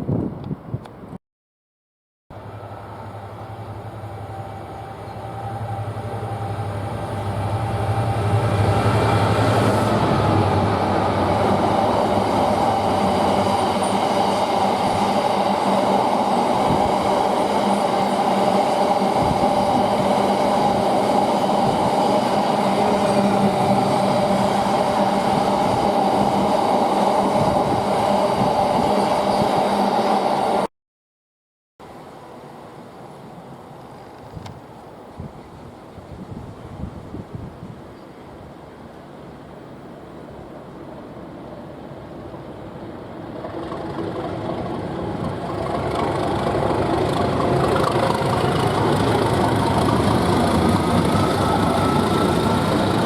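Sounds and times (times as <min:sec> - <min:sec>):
locomotive engine drone: 0:02.4 - 0:30.6, 0:40.1 - 0:53.0
train wagons rolling by: 0:40.6 - 0:53.0.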